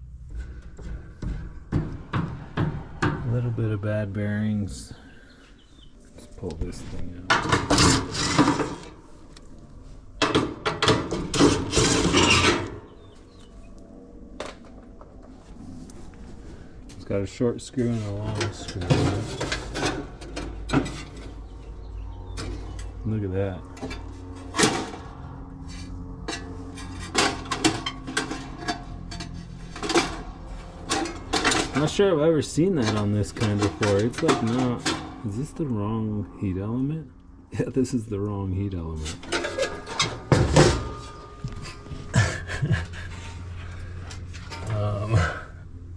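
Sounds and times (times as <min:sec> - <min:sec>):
quiet handling noise: 0:06.0 - 0:11.9, 0:32.6 - 0:36.0
sheet metal scraping: 0:06.2 - 0:09.3, 0:10.2 - 0:13.4, 0:17.7 - 0:35.7, 0:38.9 - 0:44.9
metal clinks and clanks: 0:26.2 - 0:32.0.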